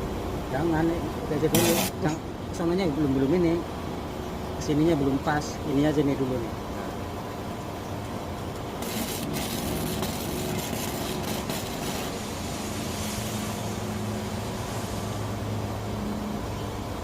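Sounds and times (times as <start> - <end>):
arc welding crackling hiss: 1.5 - 2.2, 8.8 - 15.6.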